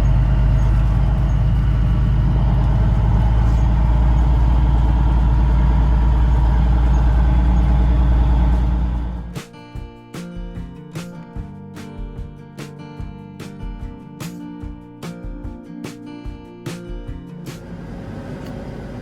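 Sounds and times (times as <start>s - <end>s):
cab rumble on dirt road: 0.0s - 9.4s
vehicle engine drone: 0.0s - 9.4s, 17.5s - 19.0s.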